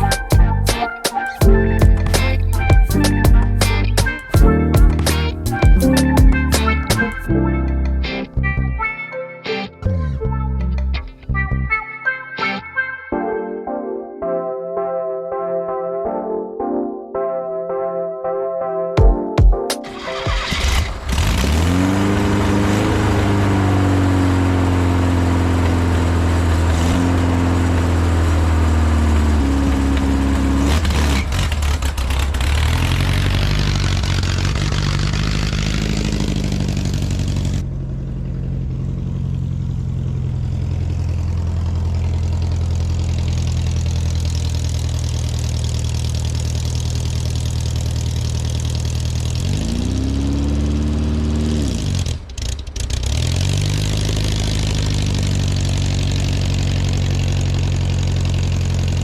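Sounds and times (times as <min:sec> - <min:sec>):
car engine running: 0:20.0 - 0:59.0.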